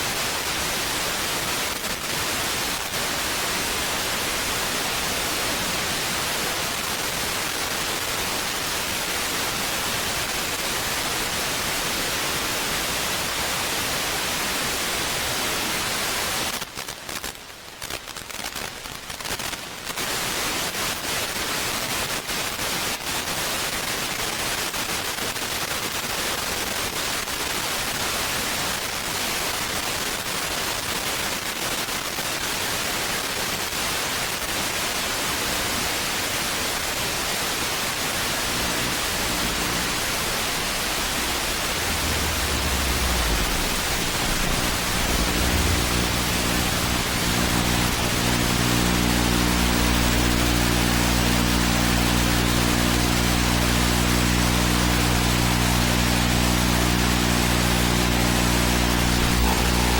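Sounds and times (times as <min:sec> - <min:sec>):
steady static hiss: 0:34.5 - 0:59.9.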